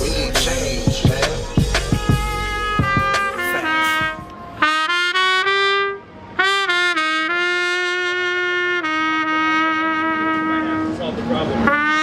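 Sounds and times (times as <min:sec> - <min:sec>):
trumpet playing held notes: 0:01.1 - 0:12.0.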